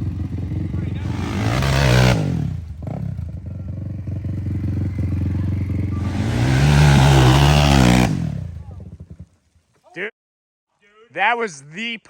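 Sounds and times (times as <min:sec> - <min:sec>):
dirt bike engine revving: 0:00.0 - 0:09.4.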